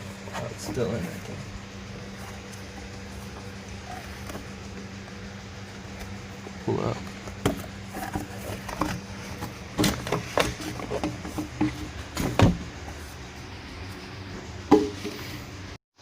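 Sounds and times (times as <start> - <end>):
plastic parts clunking and knocking: 5.8 - 13.0.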